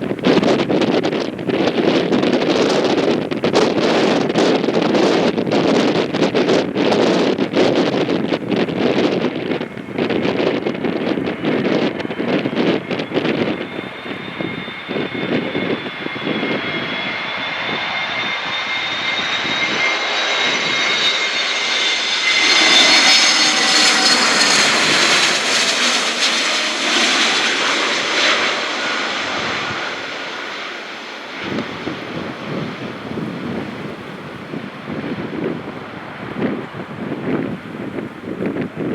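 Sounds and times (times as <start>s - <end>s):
airliner engine whine: 0.0s - 38.9s
wind buffeting microphone: 0.0s - 38.9s.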